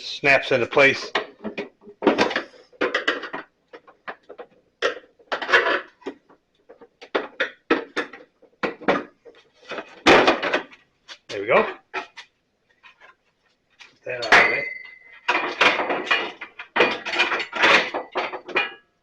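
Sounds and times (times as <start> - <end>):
metal cover clattering: 14.2 - 19.0.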